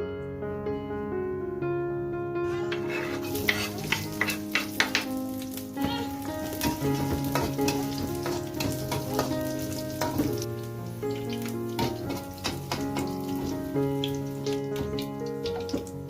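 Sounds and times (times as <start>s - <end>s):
soft piano music: 0.0s - 16.0s
food sizzling in a frying pan: 2.5s - 16.0s
utensil clicking against pan: 2.8s - 5.2s, 6.5s - 10.5s, 11.2s - 16.0s.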